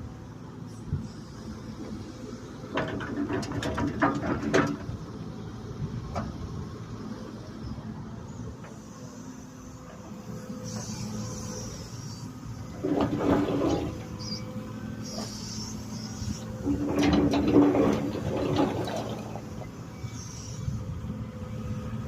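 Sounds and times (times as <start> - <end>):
excavator engine running: 0.1 - 22.0
metal clanks and scrapes: 2.7 - 4.9, 12.7 - 14.4, 15.0 - 19.8.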